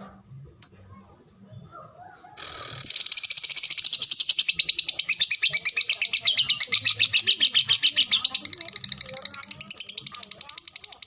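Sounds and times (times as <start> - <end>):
lovebird chattering trill: 2.5 - 11.0.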